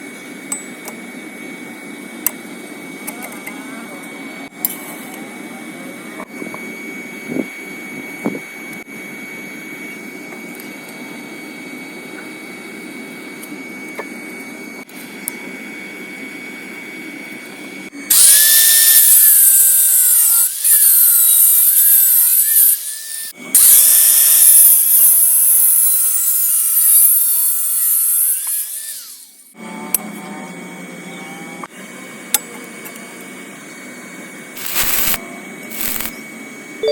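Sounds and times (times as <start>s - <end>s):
angle grinder cutting metal: 18.1s - 29.6s, 34.6s - 36.2s.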